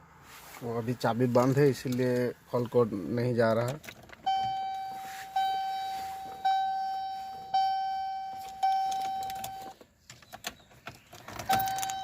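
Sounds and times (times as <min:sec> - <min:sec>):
car electronic warning chime: 0:04.2 - 0:09.8, 0:11.5 - 0:12.0.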